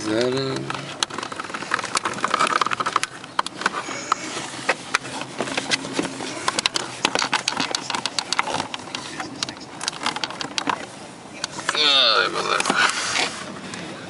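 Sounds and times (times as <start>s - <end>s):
plastic connector clicks and scrapes: 0.2s - 10.8s.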